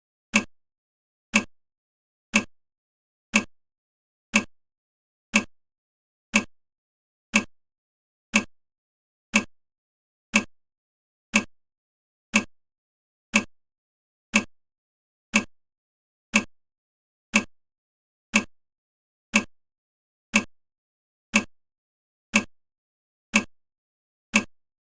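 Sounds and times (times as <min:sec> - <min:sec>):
clock ticking: 0:00.3 - 0:00.5, 0:01.3 - 0:01.5, 0:02.3 - 0:02.5, 0:03.3 - 0:03.5, 0:04.3 - 0:04.5, 0:05.3 - 0:05.5, 0:06.3 - 0:06.5, 0:07.3 - 0:07.5, 0:08.3 - 0:08.5, 0:09.3 - 0:09.5, 0:10.3 - 0:10.5, 0:11.3 - 0:11.5, 0:12.3 - 0:12.5, 0:13.3 - 0:13.5, 0:14.3 - 0:14.5, 0:15.3 - 0:15.5, 0:16.3 - 0:16.5, 0:17.3 - 0:17.5, 0:18.3 - 0:18.5, 0:19.3 - 0:19.5, 0:20.3 - 0:20.5, 0:21.3 - 0:21.5, 0:22.3 - 0:22.5, 0:23.3 - 0:23.6, 0:24.3 - 0:24.6.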